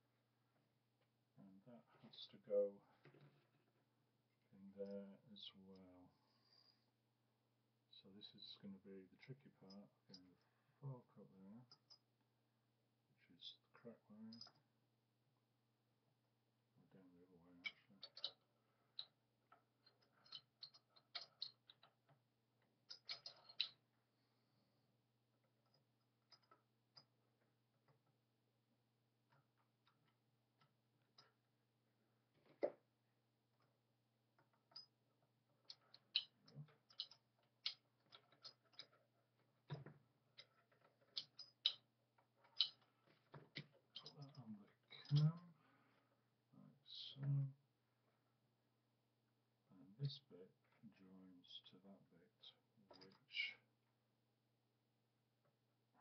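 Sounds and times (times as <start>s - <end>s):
metal parts clicking and tapping: 17.6s - 23.8s, 25.4s - 28.1s, 34.4s - 45.3s.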